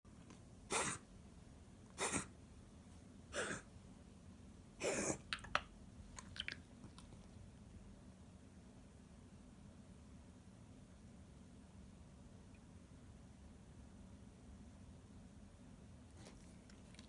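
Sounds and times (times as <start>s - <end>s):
dog reverse sneezing: 0.7s - 1.0s, 2.0s - 2.3s, 4.8s - 5.2s.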